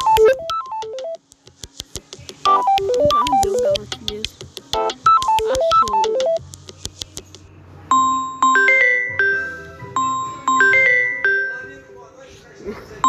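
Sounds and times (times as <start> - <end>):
electronic ringtone melody: 0.0 - 1.2, 2.5 - 4.2, 4.8 - 6.4, 7.9 - 11.7.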